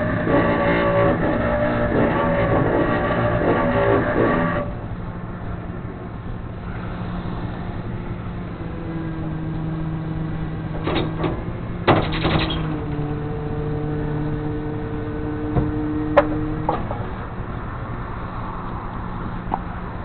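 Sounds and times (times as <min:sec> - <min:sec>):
steady higher tones: 0:00.0 - 0:10.8
vehicle engine humming: 0:00.0 - 0:20.0
short clatter: 0:10.8 - 0:12.9.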